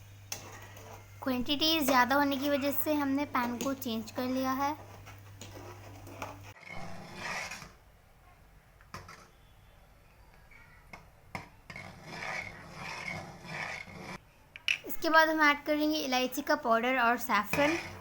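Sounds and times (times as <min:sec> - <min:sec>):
utensil scraping a pan: 0:04.5 - 0:07.8, 0:11.7 - 0:14.2, 0:17.5 - 0:18.0.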